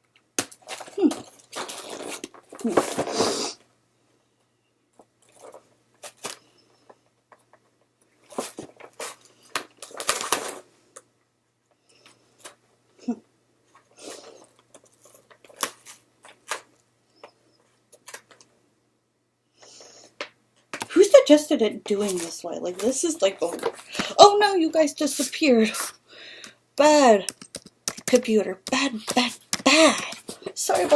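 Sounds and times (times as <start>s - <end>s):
plastic and cardboard packaging crinkling: 0.5s - 3.3s, 8.2s - 10.6s, 28.8s - 30.9s.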